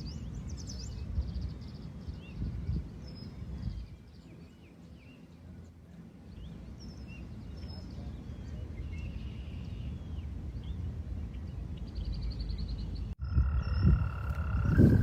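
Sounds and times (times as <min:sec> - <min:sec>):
wind rumble on microphone: 0:00.0 - 0:04.6, 0:05.4 - 0:15.0
small birds chirping: 0:00.0 - 0:15.0
bird trill: 0:11.4 - 0:15.0
frog trilling: 0:13.2 - 0:15.0.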